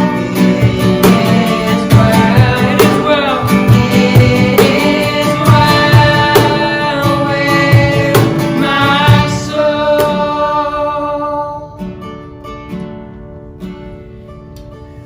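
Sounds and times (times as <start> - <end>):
guitar playing: 0.0 - 15.0
live band playing: 0.4 - 9.4
drum and cymbal hits: 0.5 - 10.1.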